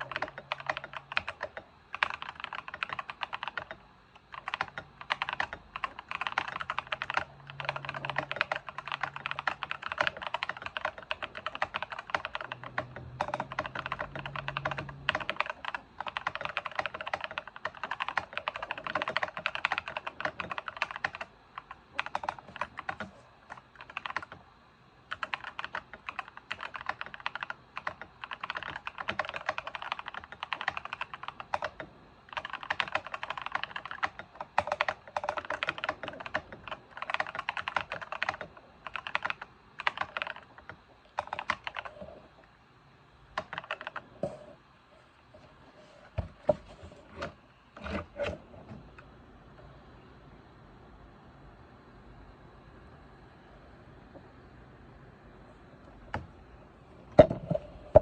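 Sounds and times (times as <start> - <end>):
fast typing on mechanical keyboard: 0.0 - 24.4, 25.1 - 42.2, 43.4 - 44.1.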